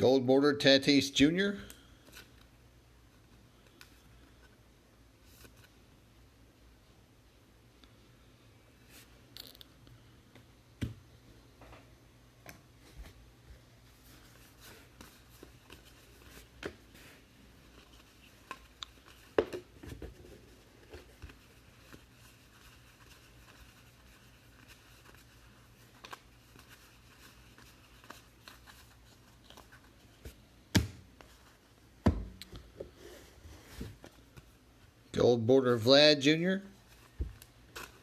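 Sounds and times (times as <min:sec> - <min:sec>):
faint steady hum: 0:00.0 - 0:38.0
trading cards shuffling: 0:36.8 - 0:38.0.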